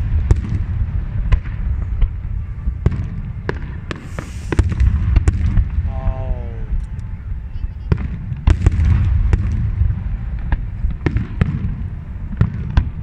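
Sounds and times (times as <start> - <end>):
high hiss: 4.0 - 4.6.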